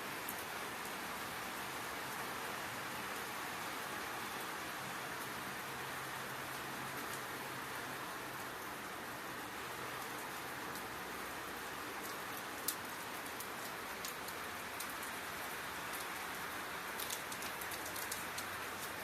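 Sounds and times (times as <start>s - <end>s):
rain hissing: 0.0s - 19.0s
drops ticking on a surface: 17.0s - 18.9s.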